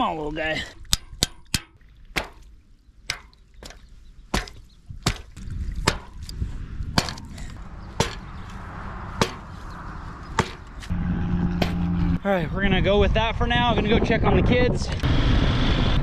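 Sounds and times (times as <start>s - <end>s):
steady rushing noise: 5.8s - 16.0s.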